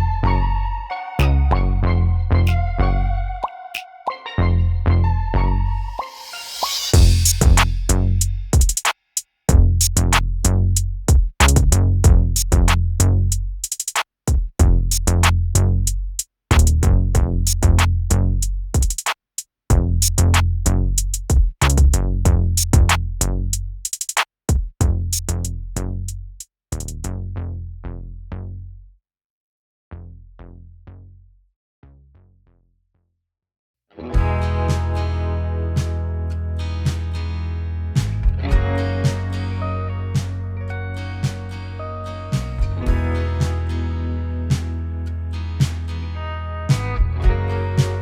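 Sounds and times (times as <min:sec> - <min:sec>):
electronic music with heavy bass: 0:00.0 - 0:08.7, 0:45.6 - 0:48.0.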